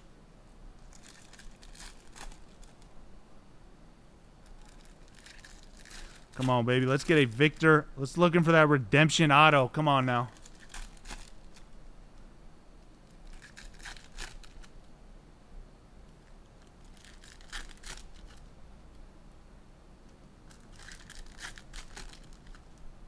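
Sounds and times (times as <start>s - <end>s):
card pack wrappers tearing and crinkling: 0.8s - 2.8s, 4.5s - 7.7s, 10.2s - 11.7s, 13.1s - 14.7s, 16.8s - 18.4s, 20.5s - 22.7s.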